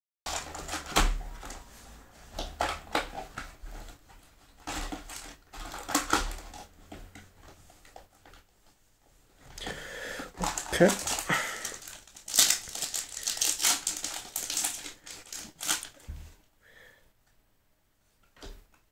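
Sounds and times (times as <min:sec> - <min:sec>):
card packaging rustling: 0:00.3 - 0:08.4, 0:09.6 - 0:16.0.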